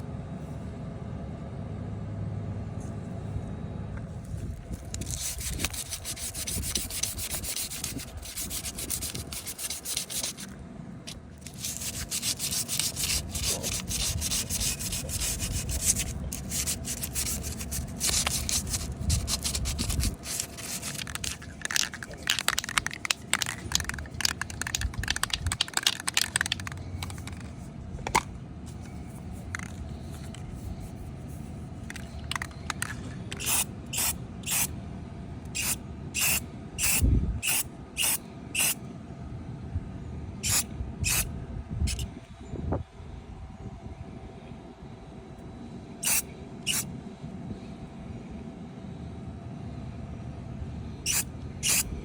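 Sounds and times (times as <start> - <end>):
hand sanding strokes: 5.0 - 10.5, 11.4 - 27.2
aerosol spray paint hissing: 11.5 - 26.8, 33.4 - 34.7, 35.6 - 38.8, 40.4 - 41.2, 46.0 - 46.8, 51.1 - 51.9.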